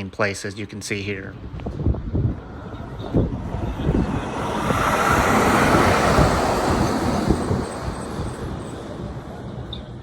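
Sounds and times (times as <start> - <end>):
vehicle passing by: 2.2 - 9.5.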